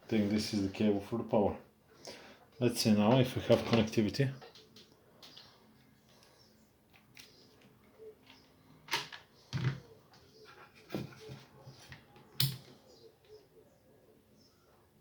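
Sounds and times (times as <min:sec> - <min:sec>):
plastic parts clicking and knocking: 0:03.1 - 0:05.5, 0:06.9 - 0:10.2.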